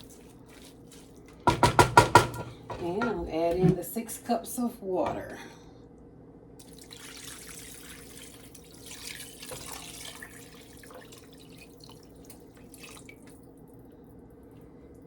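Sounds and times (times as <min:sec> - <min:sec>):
water pouring into a pot: 0:06.6 - 0:13.8.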